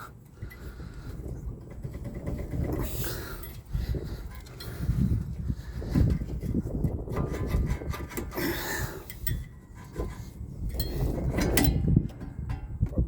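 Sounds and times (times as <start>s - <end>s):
metal scraping and clinking: 5.8s - 12.8s
sharp metal clicks: 7.0s - 13.0s.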